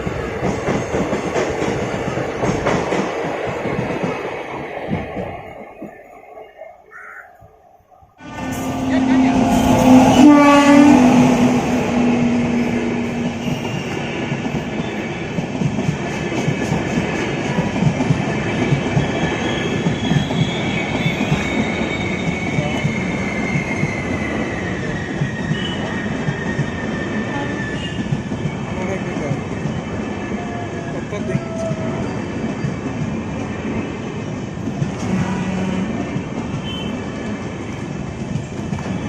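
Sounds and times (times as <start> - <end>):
train rumbling on rails: 0.0 - 7.0, 8.2 - 39.0
low train horn: 8.2 - 13.9, 25.5 - 26.0, 34.9 - 37.1
high wheel squeal: 19.2 - 28.1.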